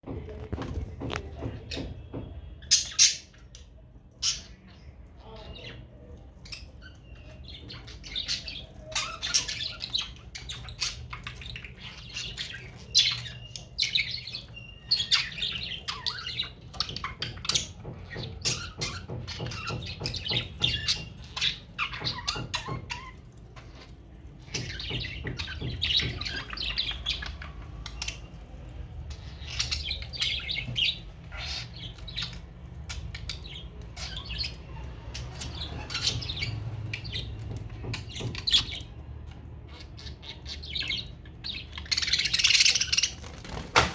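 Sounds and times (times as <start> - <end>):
budgerigars chattering: 29.1 - 37.4, 39.7 - 43.6.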